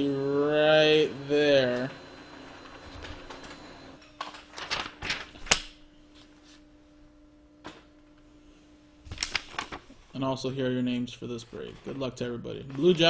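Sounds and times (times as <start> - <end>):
faint steady hum: 0.0 - 13.0
paper rustling: 4.2 - 5.6, 9.1 - 10.1.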